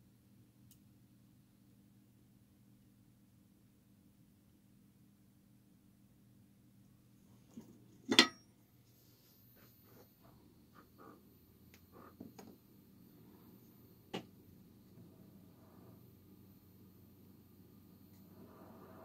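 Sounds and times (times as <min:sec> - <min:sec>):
low electrical hum: 0:00.0 - 0:19.0
faint high whine: 0:06.6 - 0:19.0.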